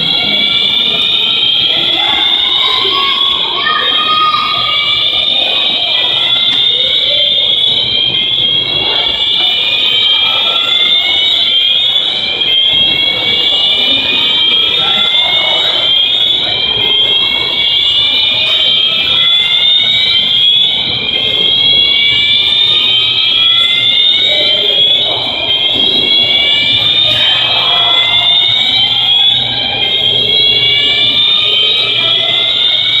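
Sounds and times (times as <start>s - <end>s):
fire alarm siren sweeping upward: 0.0s - 33.0s
murmur of people: 0.0s - 33.0s.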